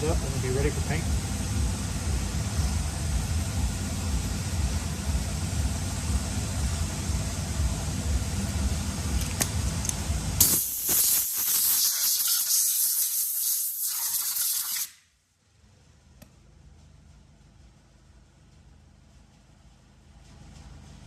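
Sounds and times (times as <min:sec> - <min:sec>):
low steady rumble: 0:00.0 - 0:10.5, 0:15.2 - 0:21.0
spraying hiss: 0:00.0 - 0:15.1.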